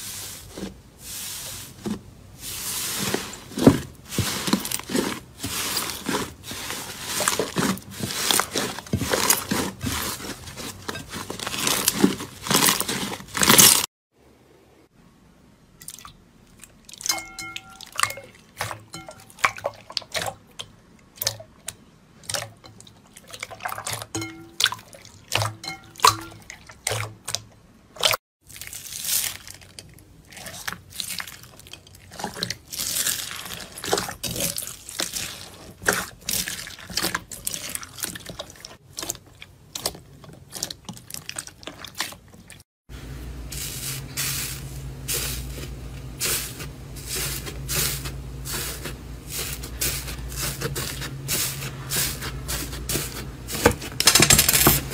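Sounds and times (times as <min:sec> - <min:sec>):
slime squelching: 0:00.0 - 0:13.9, 0:15.8 - 0:42.6.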